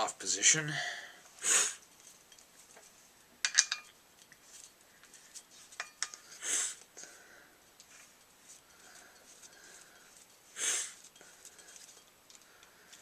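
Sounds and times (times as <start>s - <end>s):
short breathy hiss: 1.4s - 1.8s, 6.3s - 7.2s, 10.5s - 11.0s
metallic clicks and clinks: 3.4s - 4.8s.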